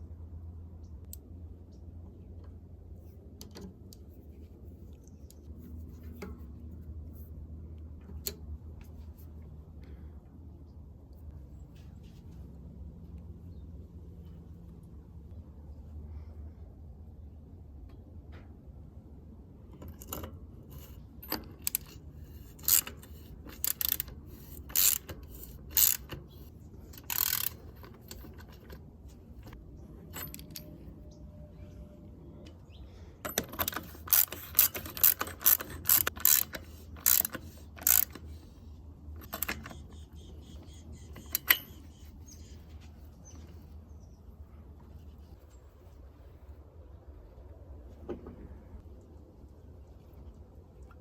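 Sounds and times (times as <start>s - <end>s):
metallic clicks of bicycle parts: 1.0s - 1.3s, 2.4s - 4.3s, 8.0s - 9.3s, 19.7s - 30.8s, 33.2s - 42.1s.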